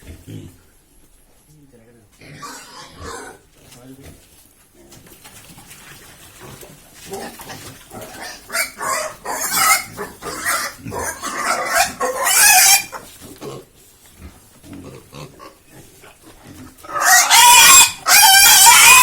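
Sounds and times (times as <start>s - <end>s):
pigs squealing: 2.2s - 3.4s, 7.1s - 13.7s, 14.8s - 19.0s.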